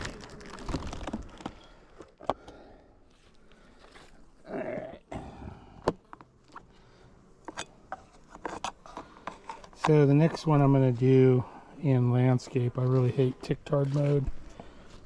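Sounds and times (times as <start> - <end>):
rustling: 0.0 - 2.0.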